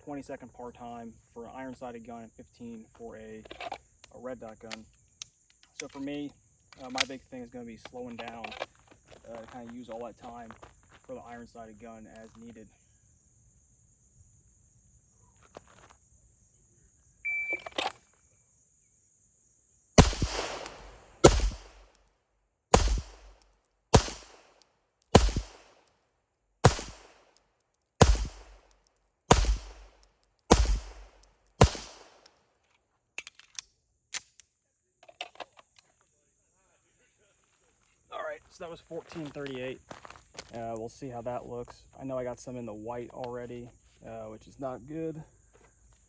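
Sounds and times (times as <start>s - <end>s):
shot timer beep: 17.3s - 17.7s
pistol shots: 20.0s - 22.0s, 22.7s - 25.8s, 26.6s - 27.3s, 28.0s - 28.7s, 29.3s - 32.3s.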